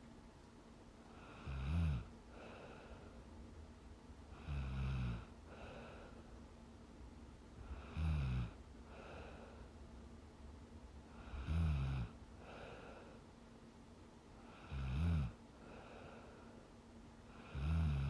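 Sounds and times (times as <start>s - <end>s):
soft breathing: 1.0s - 3.6s, 4.3s - 6.7s, 7.5s - 10.1s, 11.0s - 13.6s, 14.2s - 18.0s
woman snoring: 1.2s - 2.8s, 4.3s - 6.0s, 7.7s - 9.4s, 11.2s - 13.0s, 14.4s - 15.4s, 17.3s - 18.0s.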